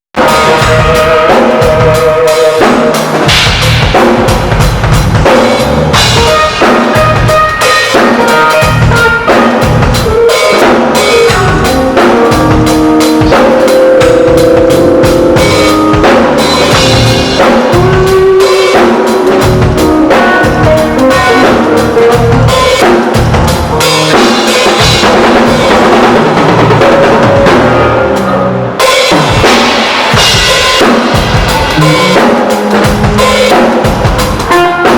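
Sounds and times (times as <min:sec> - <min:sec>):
drum kit playing loudly: 0:00.1 - 0:34.9
pitched notes ringing: 0:31.5 - 0:33.5.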